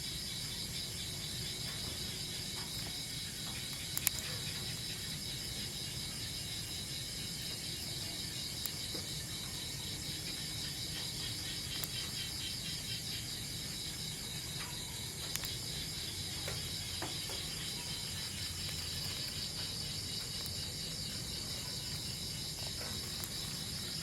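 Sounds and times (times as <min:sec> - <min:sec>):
insects chirring: 0:00.0 - 0:24.0
faint ticks: 0:01.6 - 0:04.8, 0:11.0 - 0:12.5, 0:14.5 - 0:20.7, 0:21.3 - 0:24.0.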